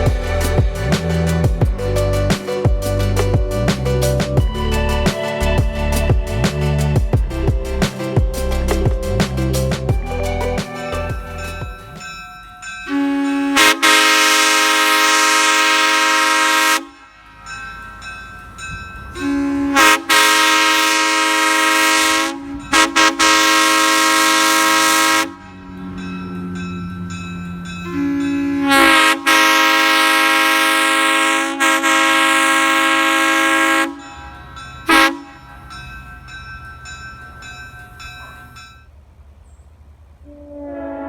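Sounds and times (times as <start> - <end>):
air horn chord: 12.9 - 17.1, 19.2 - 25.6, 27.8 - 34.0, 34.9 - 35.4, 40.3 - 41.0.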